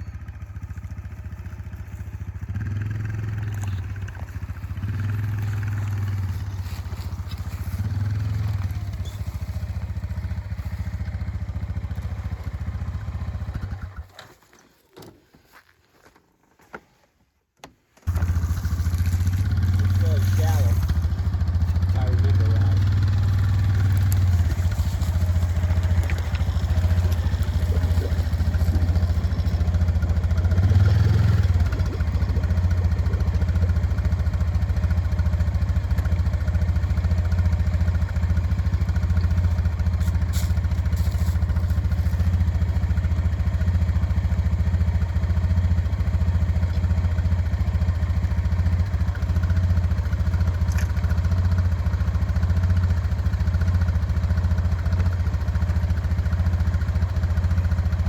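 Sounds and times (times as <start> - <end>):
motor humming: 18.1 - 34.7.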